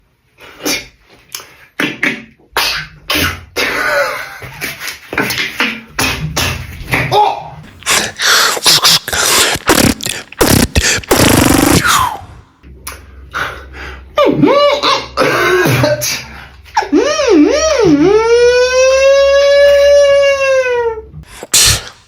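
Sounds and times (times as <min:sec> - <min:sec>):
beatboxer vocal sound effects: 0:07.8 - 0:12.5, 0:21.3 - 0:22.0.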